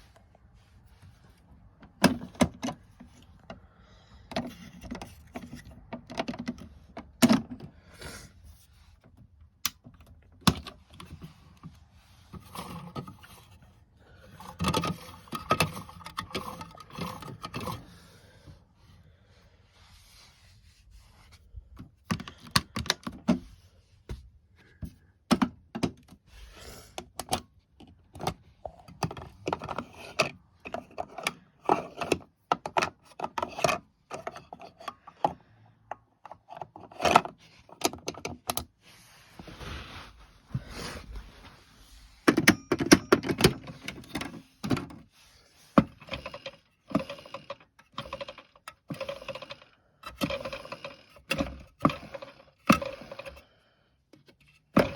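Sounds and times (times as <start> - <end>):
plastic toy parts clicking: 45.9 - 53.4.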